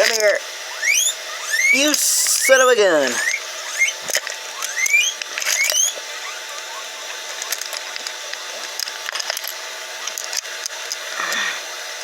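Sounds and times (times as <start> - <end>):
short rising squeaks: 0.7 - 7.6.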